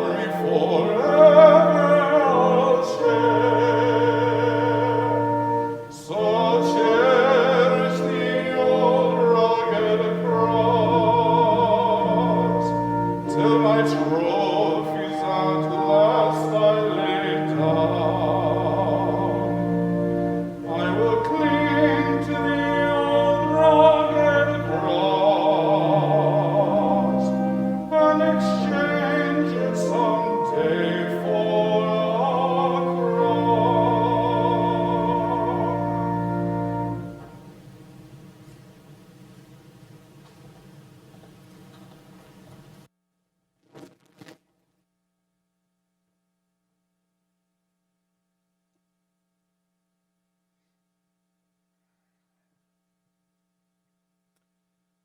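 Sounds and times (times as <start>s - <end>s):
classical singing with vibrato: 0.0s - 41.4s
keyboard holding low notes: 0.0s - 42.7s.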